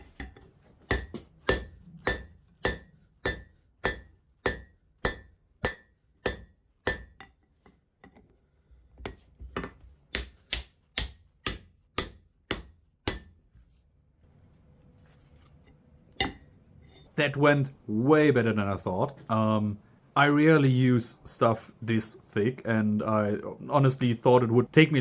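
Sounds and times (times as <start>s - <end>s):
hammer striking hot steel on anvil: 0.0s - 7.3s, 10.1s - 13.4s, 16.2s - 16.6s.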